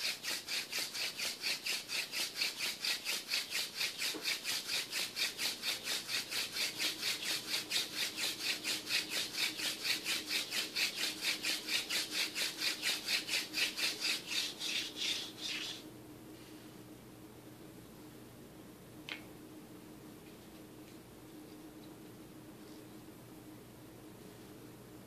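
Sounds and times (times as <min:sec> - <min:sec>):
hand drill spindle rasping: 0:00.0 - 0:15.7.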